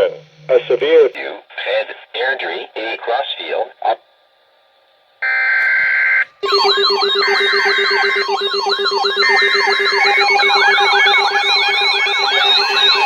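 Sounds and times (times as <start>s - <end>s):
steady electronic beeps: 0.0s - 0.8s, 5.2s - 13.0s
siren-like tones sweeping: 5.2s - 13.0s
two-note electronic alert tone: 6.4s - 13.0s.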